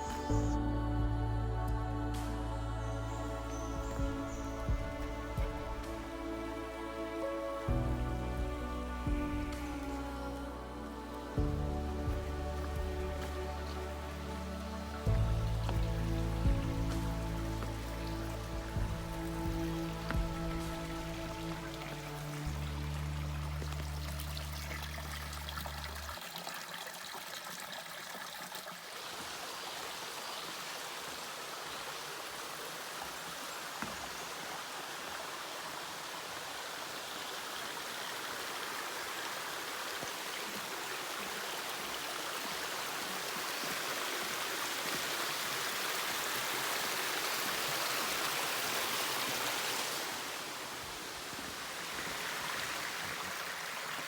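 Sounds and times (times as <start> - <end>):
music: 0.0 - 26.2
creek water trickling: 2.8 - 54.0.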